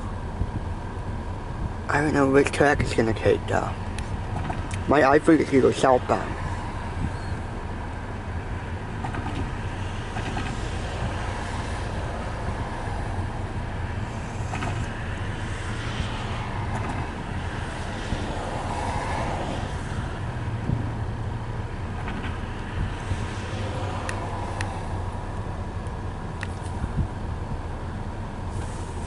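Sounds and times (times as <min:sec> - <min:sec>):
wind noise: 0:00.0 - 0:01.9, 0:06.3 - 0:25.1, 0:26.5 - 0:27.4
distant traffic: 0:00.0 - 0:29.0
engines idling: 0:00.0 - 0:29.0.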